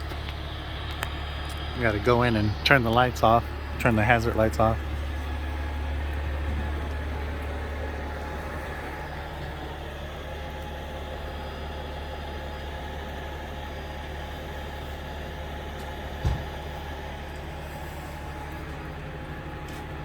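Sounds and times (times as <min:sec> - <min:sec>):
truck engine idling: 0:00.0 - 0:20.0
short thump: 0:16.2 - 0:16.6.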